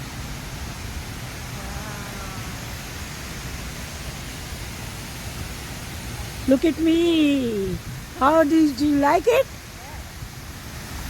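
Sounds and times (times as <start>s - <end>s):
steady rushing noise: 0.0s - 11.0s
faint voice: 1.5s - 2.7s, 9.8s - 10.1s.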